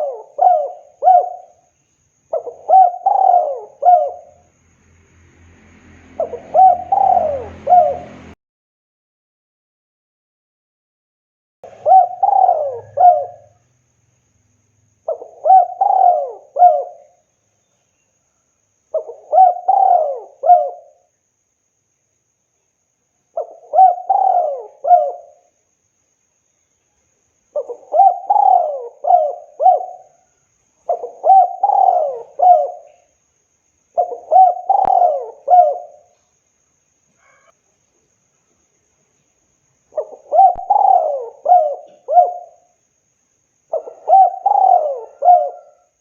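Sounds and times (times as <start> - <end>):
dove cooing: 0.0 - 1.7, 2.3 - 4.4, 6.2 - 8.4, 11.6 - 13.6, 15.1 - 17.2, 18.9 - 21.1, 23.4 - 25.5, 27.6 - 30.2, 30.8 - 33.1, 34.0 - 36.1, 39.9 - 42.7, 43.7 - 46.0.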